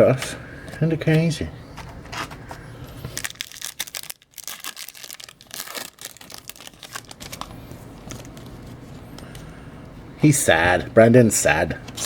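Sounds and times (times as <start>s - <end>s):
foil wrapper crinkling: 3.0s - 9.0s.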